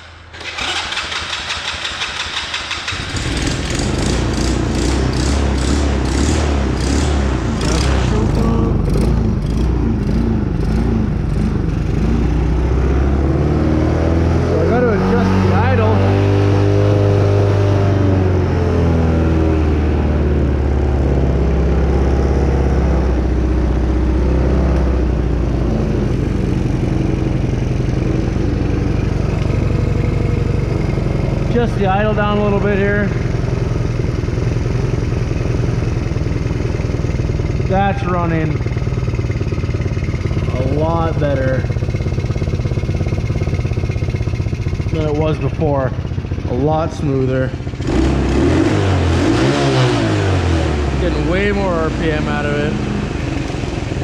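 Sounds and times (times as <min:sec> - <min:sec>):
small engine running: 0:00.3 - 0:54.0.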